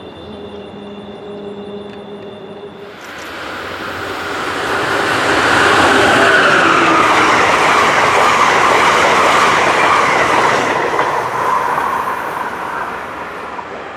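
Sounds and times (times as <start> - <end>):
high ringing tone: 0.0 - 6.6
train wheels clattering on rails: 2.8 - 13.9.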